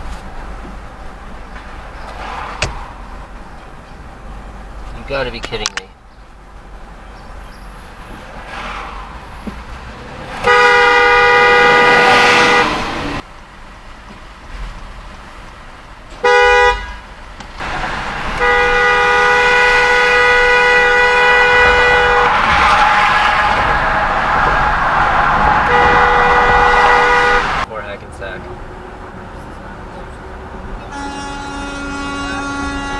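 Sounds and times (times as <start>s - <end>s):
traffic noise: 0.0s - 32.9s
car horn honking: 10.3s - 13.2s, 16.2s - 27.7s, 30.8s - 32.9s.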